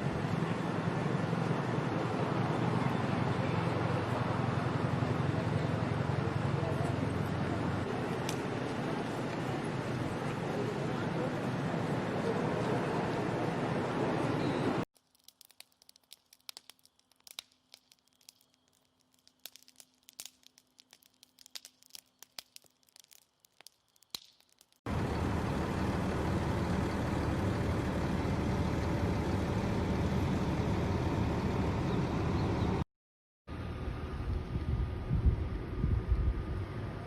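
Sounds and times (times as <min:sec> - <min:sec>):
faint crackles and clicks: 0:15.0 - 0:24.9.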